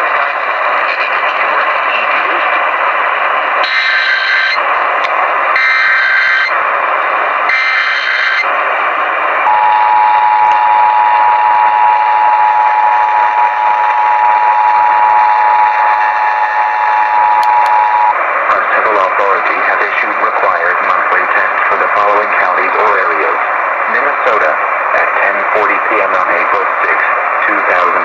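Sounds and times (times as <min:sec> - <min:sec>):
radio static hiss: 0:00.0 - 0:10.4, 0:11.7 - 0:28.0
digital data bursts: 0:07.5 - 0:08.4.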